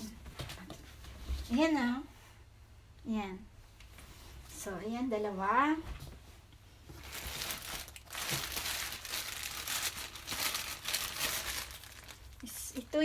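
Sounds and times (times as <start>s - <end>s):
packaging crinkling: 7.0s - 12.7s.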